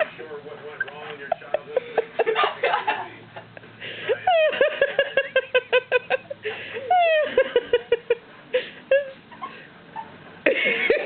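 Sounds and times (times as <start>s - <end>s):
person giggling: 4.1s - 11.0s.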